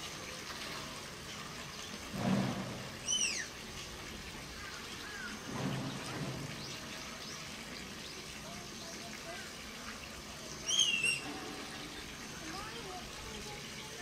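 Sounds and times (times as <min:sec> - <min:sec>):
running water hiss: 0:00.0 - 0:14.0
tapir squealing whistle: 0:10.6 - 0:11.3.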